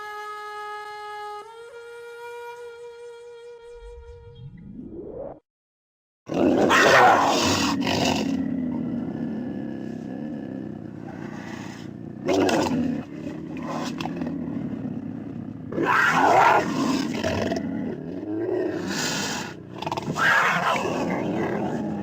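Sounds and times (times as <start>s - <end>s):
cougar growling: 6.3s - 22.0s
cougar roaring: 6.3s - 22.0s.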